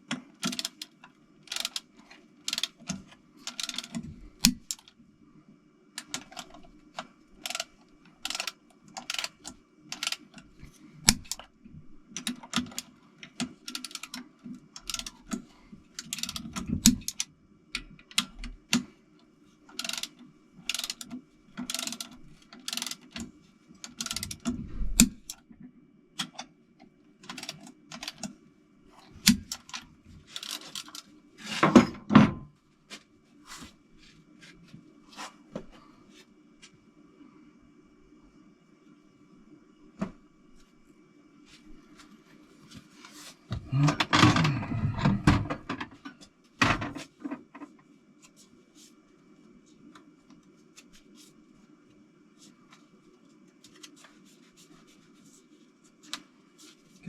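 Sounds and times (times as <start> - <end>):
ratchet wrench clicking: 0.4 - 0.9, 1.5 - 1.8, 2.5 - 2.8, 3.5 - 4.9, 7.4 - 7.7, 8.3 - 9.3, 13.7 - 14.2, 14.8 - 15.1, 16.0 - 16.4, 19.7 - 23.2, 23.9 - 24.4.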